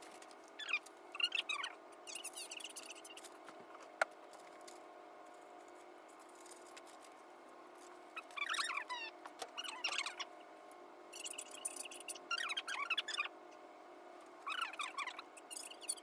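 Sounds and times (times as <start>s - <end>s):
sped-up squeaky chirping speech: 0.6s - 3.2s, 8.4s - 10.3s, 11.2s - 13.3s, 14.5s - 16.0s.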